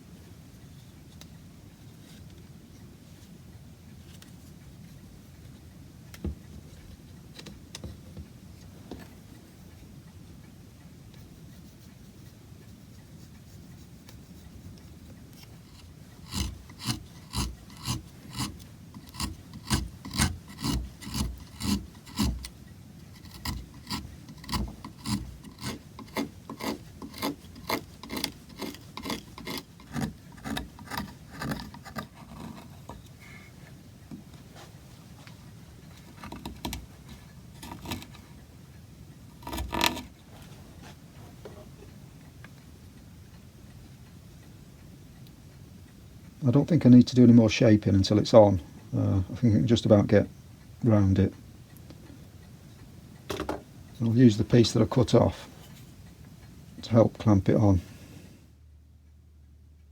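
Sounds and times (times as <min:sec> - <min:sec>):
faint handling sounds: 0:00.5 - 0:09.9, 0:20.7 - 0:38.8, 0:39.4 - 0:42.6, 0:53.9 - 0:56.1
wood rasp strokes: 0:13.7 - 0:33.0, 0:37.6 - 0:38.2, 0:39.4 - 0:40.1.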